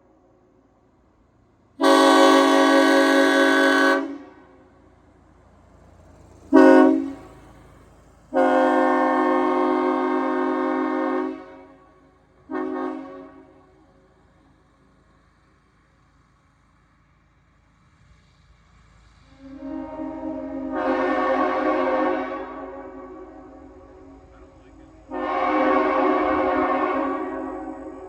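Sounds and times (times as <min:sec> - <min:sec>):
train horn blasts: 0:01.8 - 0:04.8, 0:06.5 - 0:07.4, 0:08.3 - 0:14.0, 0:19.3 - 0:28.0.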